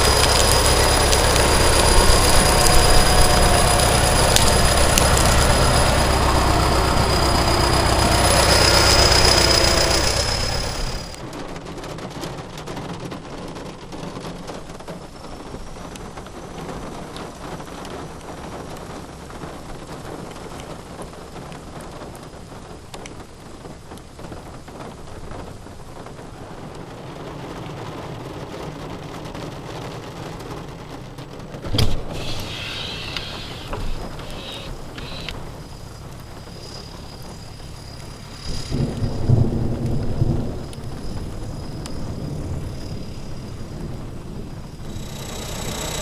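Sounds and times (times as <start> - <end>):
low rumble: 0.0 - 11.2
steady rain: 0.0 - 46.0
loud thump: 31.6 - 32.7.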